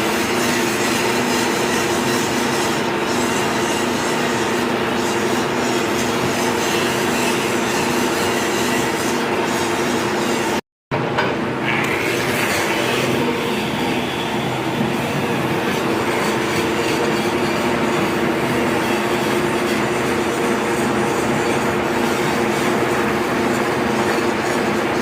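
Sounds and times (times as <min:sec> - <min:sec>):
angle grinder grinding steel: 0:00.0 - 0:10.6, 0:11.7 - 0:25.0.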